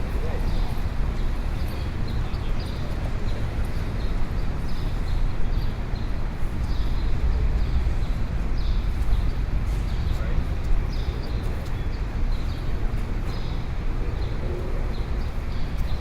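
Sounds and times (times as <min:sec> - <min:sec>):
traffic rumble: 0:00.0 - 0:16.0.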